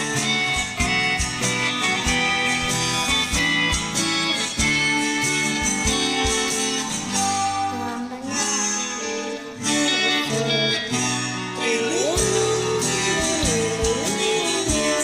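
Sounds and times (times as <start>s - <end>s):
guitar-led instrumental music: 0.0s - 15.0s.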